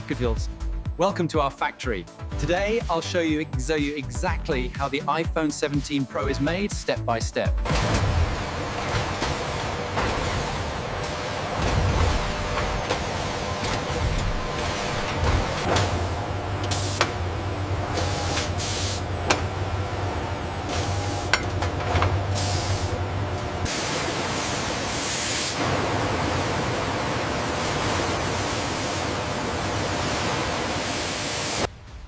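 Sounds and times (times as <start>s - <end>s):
low hum: 7.6s - 24.3s
steady machine hiss: 23.7s - 31.7s.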